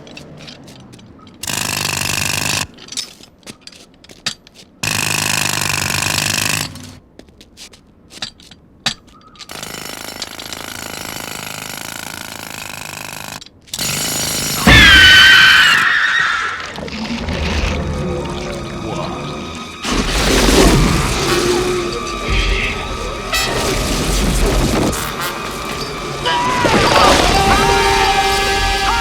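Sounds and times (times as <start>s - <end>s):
jackhammer breaking pavement: 1.4s - 2.8s, 4.8s - 7.0s, 9.5s - 15.2s, 19.8s - 29.0s
loud sound with gliding tones: 16.8s - 29.0s.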